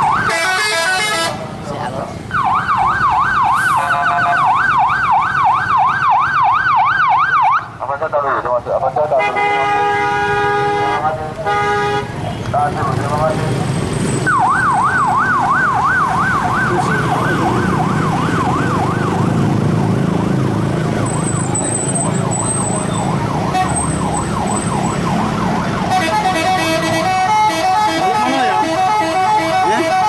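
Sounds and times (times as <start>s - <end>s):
musical bus horn yelping: 0.2s - 1.4s, 9.2s - 12.2s, 25.9s - 30.0s.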